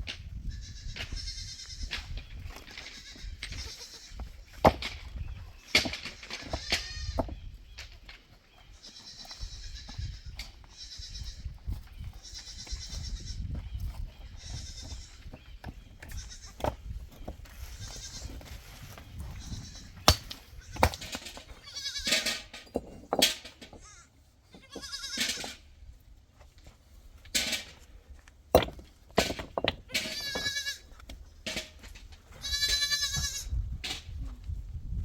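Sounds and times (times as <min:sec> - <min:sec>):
goats bleating: 0:02.9 - 0:04.2, 0:23.8 - 0:25.4, 0:30.0 - 0:30.9, 0:32.3 - 0:33.5.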